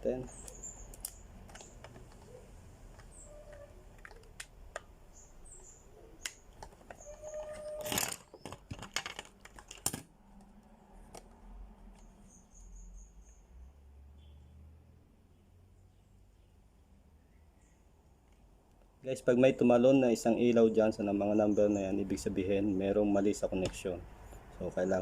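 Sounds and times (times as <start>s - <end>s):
plastic plugs clicking into ports: 0.4s - 2.3s, 2.9s - 4.9s.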